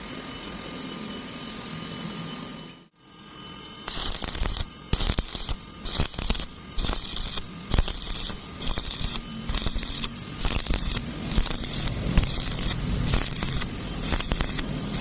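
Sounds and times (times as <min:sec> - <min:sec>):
steady high whine: 0:00.0 - 0:15.0
welding arc crackling: 0:03.8 - 0:15.0.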